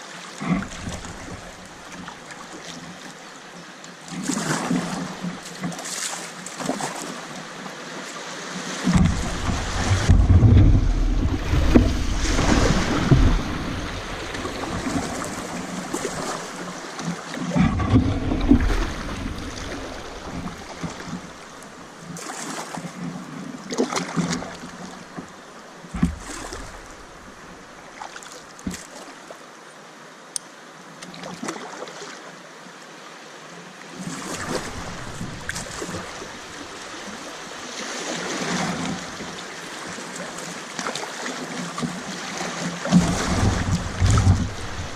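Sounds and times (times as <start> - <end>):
paddle splashing water: 0.0 - 29.4, 31.1 - 32.4, 33.8 - 44.9
wind buffeting microphone: 8.9 - 16.6, 34.4 - 37.1, 42.9 - 44.9.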